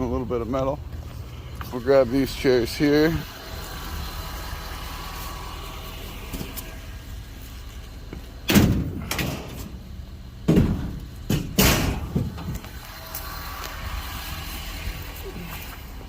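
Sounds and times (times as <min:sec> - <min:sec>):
steel chairs clanging into truck bed: 0:08.4 - 0:09.8, 0:10.4 - 0:12.6.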